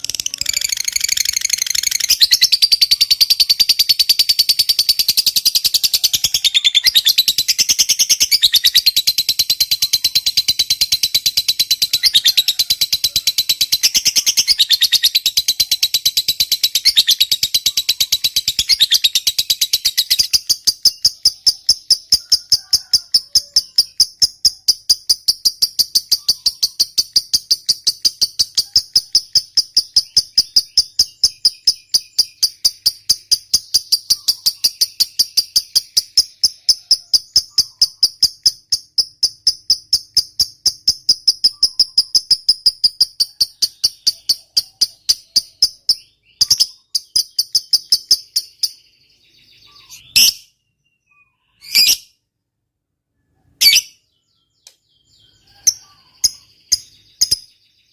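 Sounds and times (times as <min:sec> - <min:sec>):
shrill bird calls: 0:00.0 - 0:38.8, 0:40.5 - 0:52.3, 0:53.1 - 0:57.9
lovebird chattering: 0:00.0 - 0:48.8, 0:49.5 - 0:50.5, 0:51.5 - 0:52.1, 0:53.5 - 0:54.0, 0:54.6 - 0:57.5.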